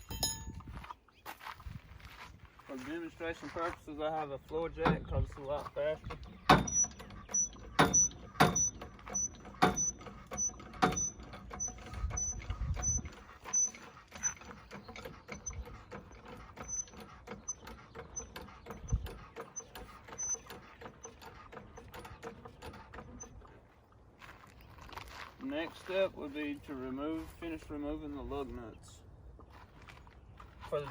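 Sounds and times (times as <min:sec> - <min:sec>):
floor jack clanking: 0:04.4 - 0:23.6
floor jack clicking and squeaking: 0:04.8 - 0:23.5.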